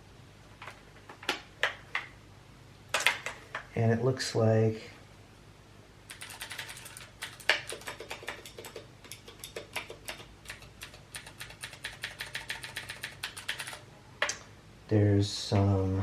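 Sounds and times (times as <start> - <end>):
keyboard keys clicking: 6.1 - 13.8.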